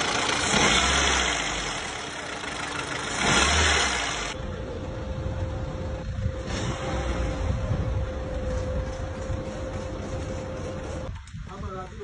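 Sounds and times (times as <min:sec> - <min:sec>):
car engine running with knocking: 0:00.0 - 0:04.4, 0:08.1 - 0:11.9.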